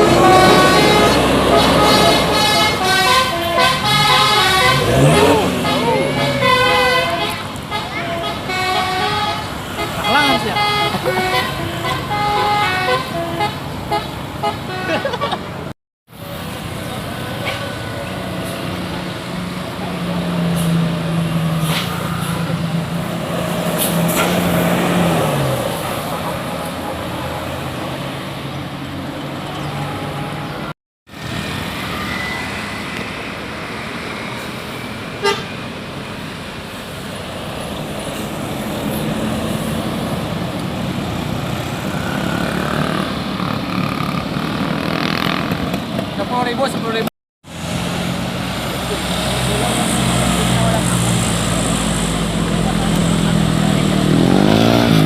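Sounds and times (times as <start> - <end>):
horn tooting: 0.0 - 15.4, 35.2 - 35.6
road traffic: 0.0 - 55.0.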